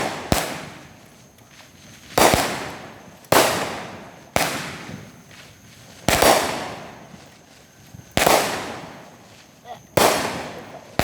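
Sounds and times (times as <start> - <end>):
firework bangs with echo: 0.0 - 1.0, 2.1 - 7.2, 8.2 - 9.2, 9.9 - 11.0.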